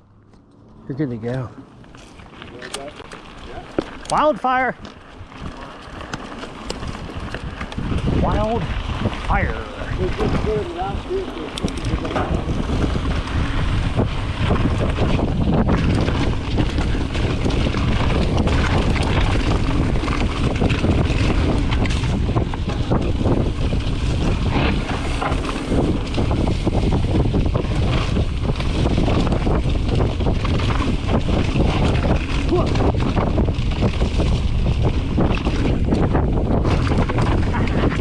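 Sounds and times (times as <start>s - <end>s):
tyre noise on dirt and rock: 0.0s - 38.0s
wind rushing over microphone: 2.8s - 38.0s.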